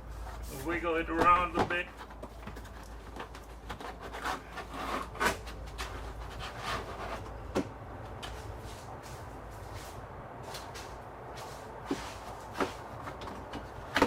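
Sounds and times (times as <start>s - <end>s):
rubber seal rubbing and scraping: 1.8s - 7.5s.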